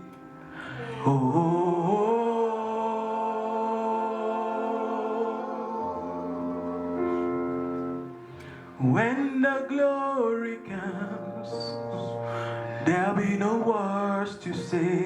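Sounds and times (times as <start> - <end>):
sustained accompaniment: 0.0 - 15.0.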